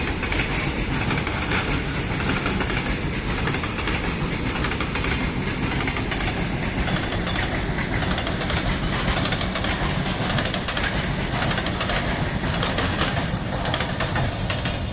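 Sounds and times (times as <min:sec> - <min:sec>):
freight train rumbling past: 0:00.0 - 0:14.9
wheels clattering over rail joints: 0:00.0 - 0:14.9.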